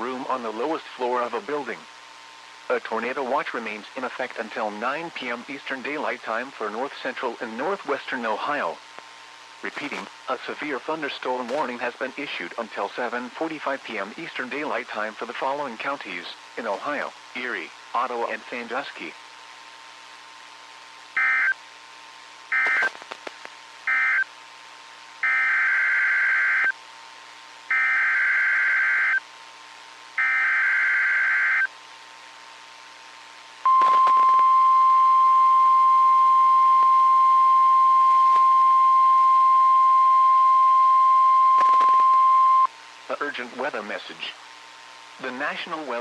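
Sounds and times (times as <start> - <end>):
steady warning alarm tone: 21.2 - 21.6, 22.5 - 22.9, 23.9 - 24.3, 25.2 - 26.8, 27.7 - 29.2, 30.2 - 31.7, 33.7 - 42.7
short data bursts: 22.5 - 23.2, 23.9 - 24.3, 33.7 - 42.7.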